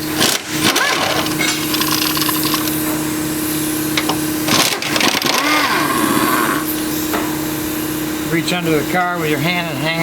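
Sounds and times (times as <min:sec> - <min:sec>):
impact gun whine: 0:00.0 - 0:07.7
steady hum: 0:00.0 - 0:10.0.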